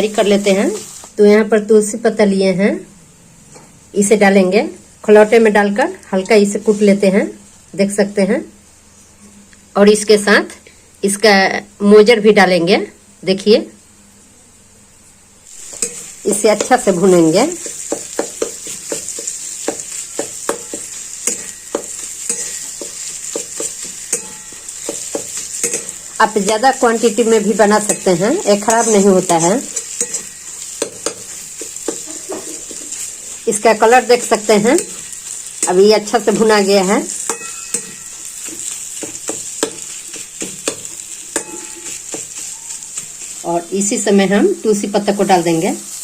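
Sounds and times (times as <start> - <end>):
spices sizzling in oil: 0.0 - 2.6, 3.9 - 8.4, 15.4 - 46.0
utensil scraping and knocking pan: 15.6 - 27.2, 27.8 - 33.4, 37.1 - 43.4.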